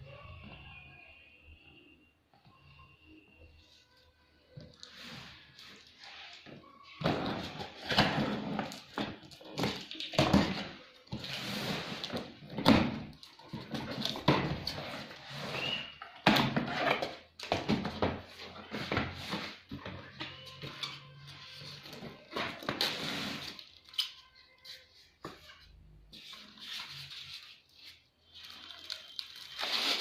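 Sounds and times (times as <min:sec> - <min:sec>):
packaging rustling: 0:26.3 - 0:30.0.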